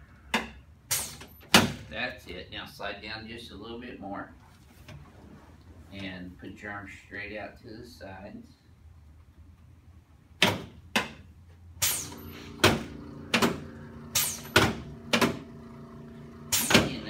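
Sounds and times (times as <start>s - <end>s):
low steady hum: 11.3s - 17.0s.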